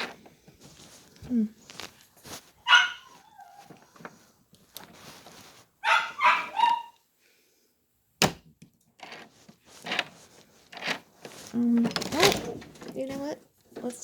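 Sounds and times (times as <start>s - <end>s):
dog barking: 2.6s - 3.4s, 5.8s - 7.0s.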